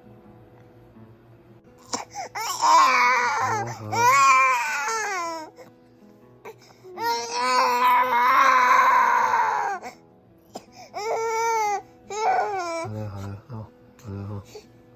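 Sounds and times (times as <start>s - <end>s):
soft background music: 0.0s - 14.9s
baby crying: 1.8s - 5.7s, 6.8s - 10.0s, 10.6s - 13.1s.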